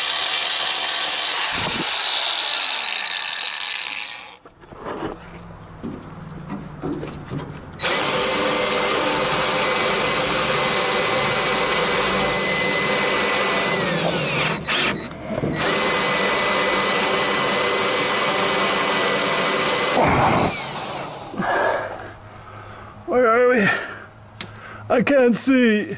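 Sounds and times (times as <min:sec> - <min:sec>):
electric power tool motor whine: 0:00.0 - 0:04.4, 0:07.8 - 0:21.4.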